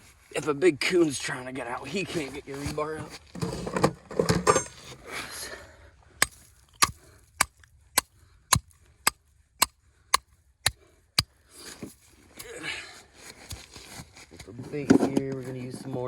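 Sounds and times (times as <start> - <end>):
hammer striking metal stake: 6.2 - 11.3.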